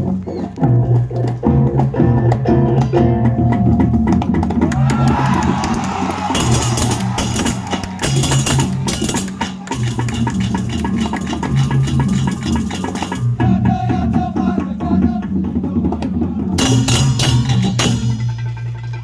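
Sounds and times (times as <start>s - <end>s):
drums: 0.0s - 19.0s
gongs ringing: 4.8s - 13.4s
hand cymbals clashing: 4.8s - 13.4s, 16.6s - 18.6s.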